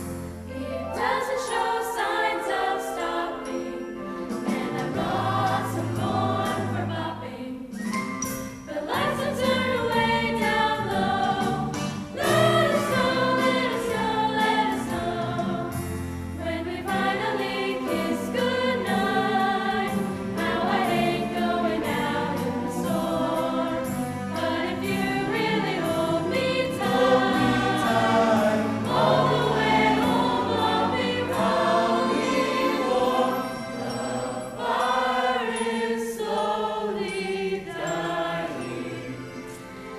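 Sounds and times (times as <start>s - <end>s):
choir singing: 0.0s - 7.8s, 8.6s - 39.9s
instrumental accompaniment: 0.0s - 39.9s.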